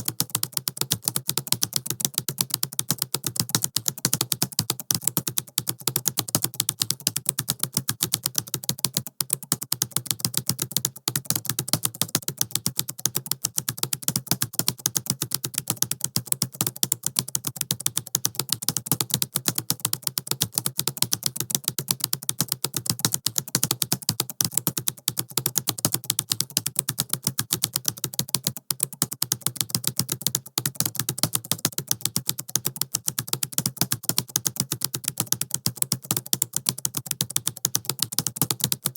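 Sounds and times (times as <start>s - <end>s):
fast typing on laptop keyboard: 0.0s - 38.9s.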